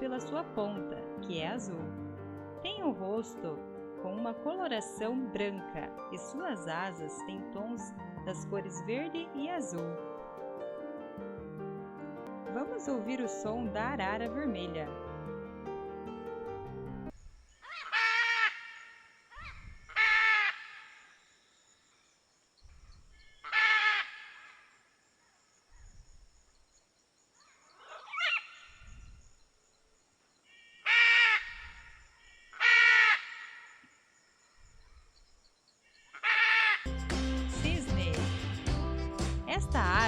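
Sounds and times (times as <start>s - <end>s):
macaw squawking: 17.6s - 20.9s, 23.4s - 24.6s, 30.6s - 31.7s, 32.3s - 33.6s, 36.2s - 37.0s.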